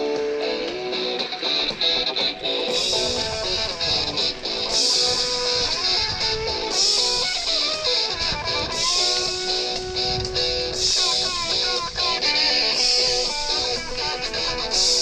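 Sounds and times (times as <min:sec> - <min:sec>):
electric guitar rock music: 0:00.0 - 0:15.0.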